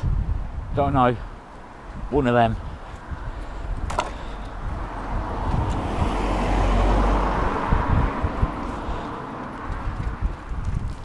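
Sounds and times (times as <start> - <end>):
car driving past: 4.8 - 9.9.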